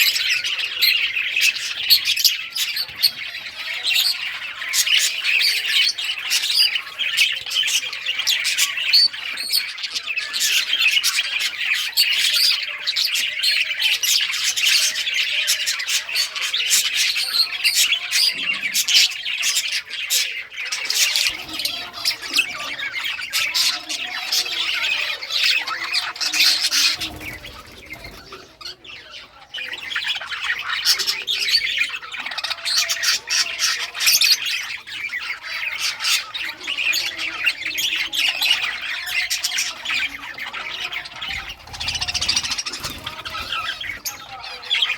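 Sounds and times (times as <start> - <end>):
budgerigars chirping and chattering: 0.0 - 44.9.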